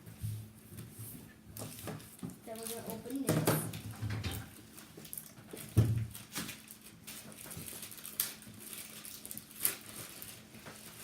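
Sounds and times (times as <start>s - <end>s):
packaging clicks and rustles: 1.6s - 3.3s, 4.7s - 11.0s.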